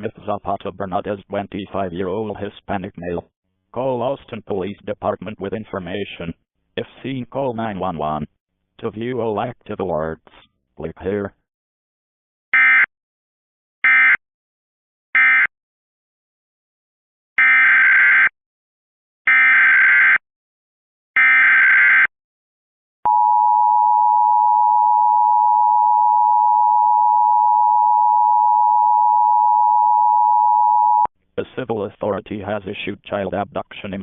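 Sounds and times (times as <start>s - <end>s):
loud steady dual tone: 23.1s - 31.1s.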